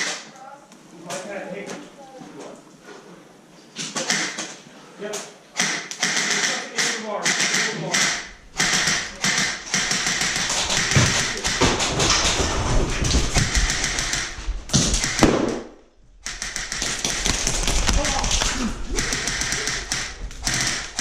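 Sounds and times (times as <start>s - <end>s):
rapid tapping and clicking: 5.6s - 21.0s.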